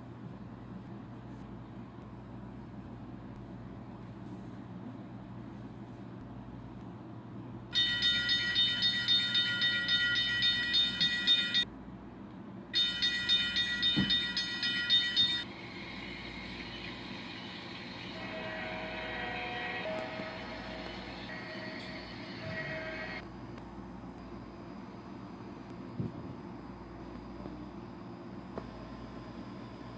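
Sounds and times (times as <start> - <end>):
faint sustained tones: 12.8 - 23.2
train rumbling past: 12.8 - 23.3
train horn blasts: 18.1 - 23.2.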